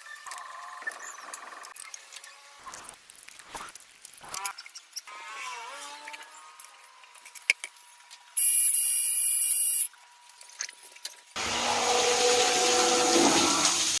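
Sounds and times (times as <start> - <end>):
small electric motor whining: 2.0 - 10.0.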